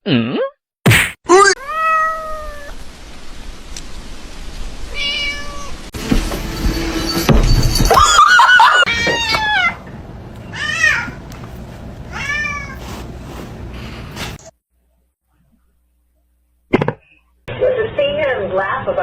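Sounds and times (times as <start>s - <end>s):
cat meowing: 1.6s - 2.8s, 4.9s - 5.8s, 12.1s - 12.8s.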